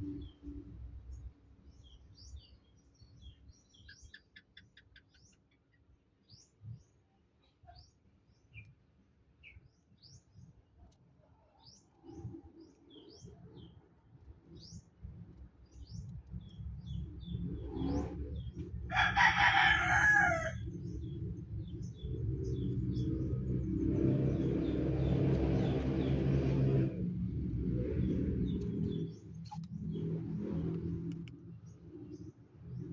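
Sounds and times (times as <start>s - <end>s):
small birds chirping: 0.0s - 8.8s, 9.4s - 18.8s, 20.3s - 32.9s
low rumble: 15.9s - 32.9s
rooster crowing: 18.9s - 20.6s.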